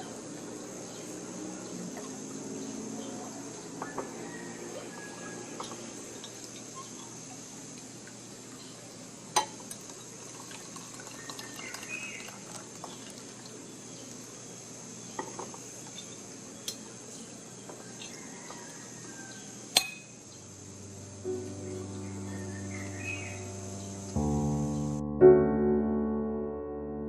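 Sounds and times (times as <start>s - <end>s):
high insect buzz: 18.0s - 25.0s.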